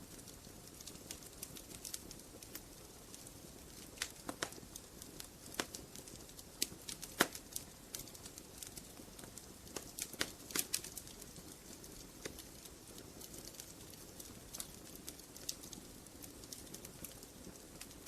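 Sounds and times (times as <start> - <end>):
logs crackling and popping: 0.0 - 18.0
low steady hiss: 0.0 - 18.0.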